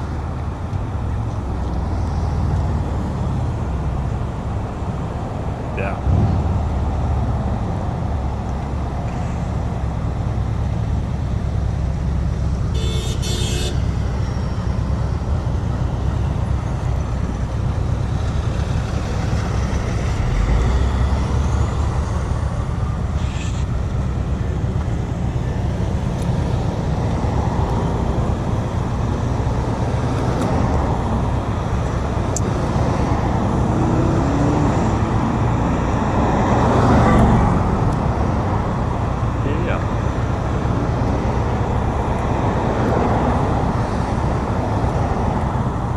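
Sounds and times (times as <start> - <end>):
cars passing on busy street: 0.0 - 45.9
short car horn honk: 12.8 - 13.8.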